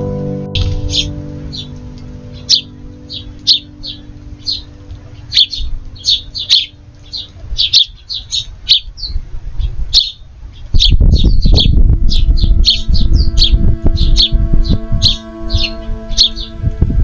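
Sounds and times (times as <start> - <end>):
small songbirds chirping: 0.6 - 17.0
loud low rumble: 11.1 - 17.0.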